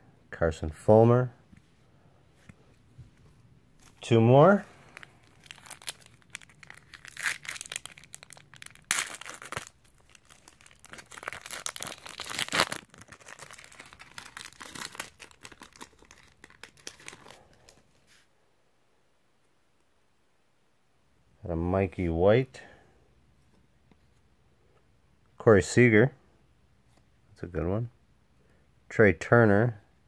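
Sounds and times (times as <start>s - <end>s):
foil wrapper crinkling: 4.8s - 17.8s
foil wrapper ripping: 4.8s - 17.8s.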